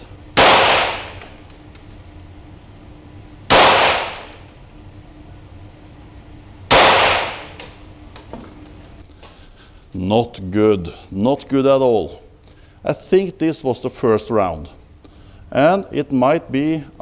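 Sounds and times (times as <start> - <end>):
pistol shots with echo: 0.4 - 1.2, 3.5 - 4.3, 6.7 - 7.6.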